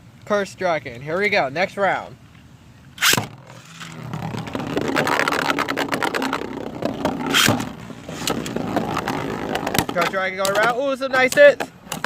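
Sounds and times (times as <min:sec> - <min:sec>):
spinning top launcher rip: 0:03.0 - 0:09.9.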